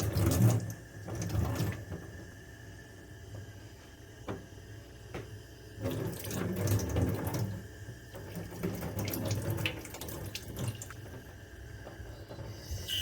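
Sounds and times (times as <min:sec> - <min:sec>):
splashing and clatters: 0:00.0 - 0:02.0, 0:05.8 - 0:12.5.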